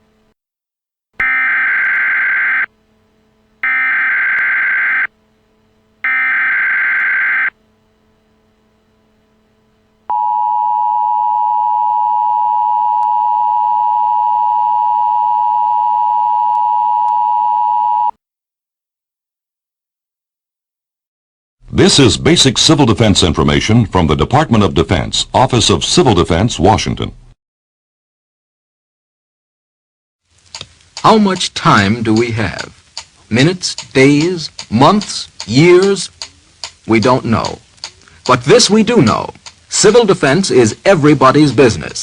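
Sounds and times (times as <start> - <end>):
digital data tone bursts: 1.2 - 2.7, 3.6 - 5.1, 6.1 - 7.5
two-tone attention signal: 1.2 - 2.7, 3.6 - 5.1, 6.1 - 7.5.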